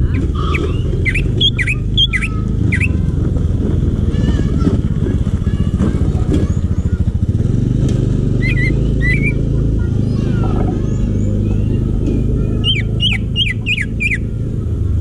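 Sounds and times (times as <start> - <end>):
bird warbling and whistling: 0.0 - 3.1, 8.4 - 14.4
loud low rumble: 0.0 - 15.0.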